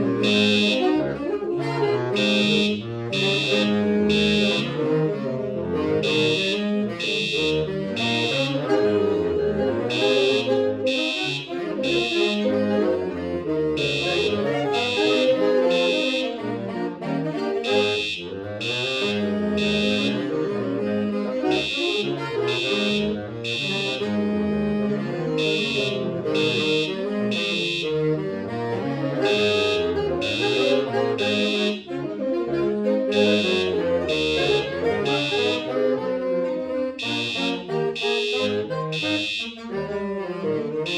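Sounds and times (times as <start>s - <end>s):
saxophone quartet playing: 0.0s - 40.9s
fire alarm high beeps: 0.2s - 0.9s, 2.2s - 4.7s, 6.0s - 9.0s, 9.8s - 12.4s, 13.8s - 16.4s, 17.6s - 20.2s, 21.5s - 24.1s, 25.3s - 27.9s, 29.3s - 31.9s, 33.1s - 35.7s, 37.0s - 39.6s.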